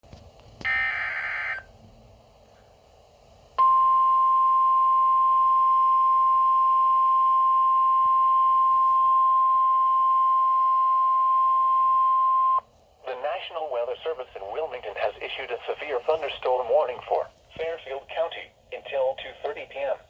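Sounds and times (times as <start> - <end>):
steady loud alert tone: 0.7 - 1.7.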